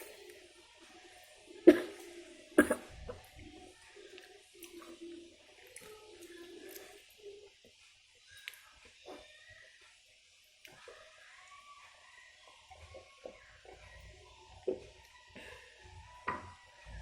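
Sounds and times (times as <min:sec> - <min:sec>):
person chewing food: 0:04.1 - 0:07.2.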